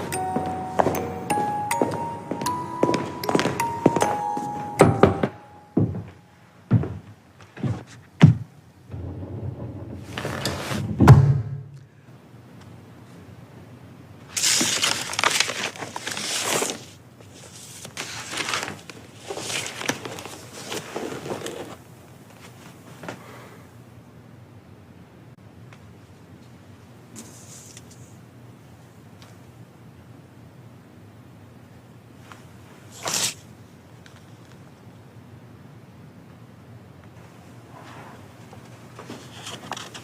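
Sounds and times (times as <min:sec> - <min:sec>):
sharp knocks and thuds: 0:06.7 - 0:11.7
heavy thud: 0:08.2 - 0:11.8
rumble: 0:08.9 - 0:11.8.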